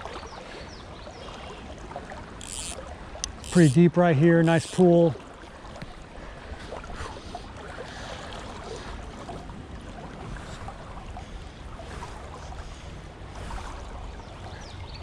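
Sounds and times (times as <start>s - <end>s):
river water running: 0.0s - 15.0s
wind rumble on microphone: 8.5s - 15.0s.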